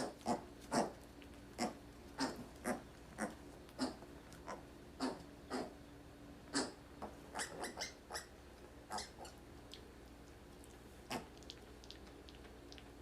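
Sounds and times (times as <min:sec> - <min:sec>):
pet squeaky calls: 0:07.3 - 0:08.3.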